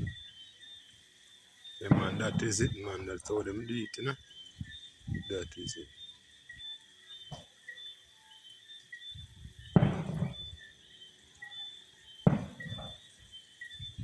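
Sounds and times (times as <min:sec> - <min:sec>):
crickets chirping: 0:00.0 - 0:14.0
fireworks banging: 0:01.8 - 0:03.7, 0:09.6 - 0:10.7, 0:12.2 - 0:13.1.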